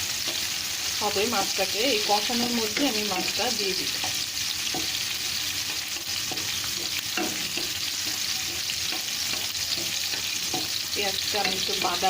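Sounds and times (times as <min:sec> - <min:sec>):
onion sizzling in hot oil: 0:00.0 - 0:12.0
stirring scrapes and knocks: 0:02.8 - 0:10.9.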